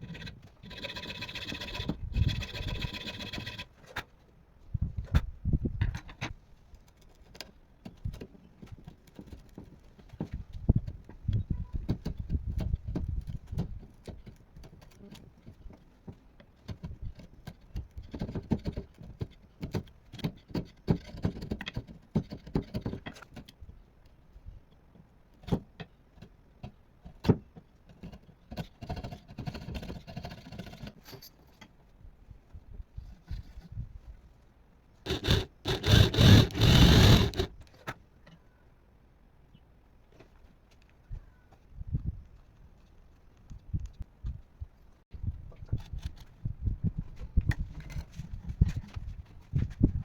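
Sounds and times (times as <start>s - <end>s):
tools and wood knocking: 35.1s - 37.5s
wood scraping: 35.1s - 37.5s.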